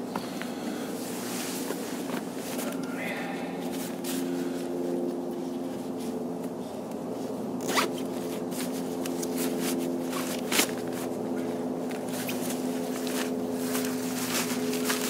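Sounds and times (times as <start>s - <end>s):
distant road traffic hum: 0.0s - 15.0s
zipper rasping: 7.6s - 10.8s.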